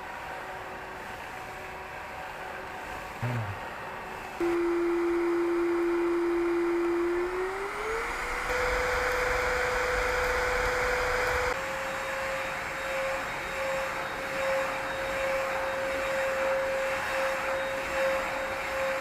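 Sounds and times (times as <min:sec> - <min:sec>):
stick vacuum motor whine: 0:04.4 - 0:11.6.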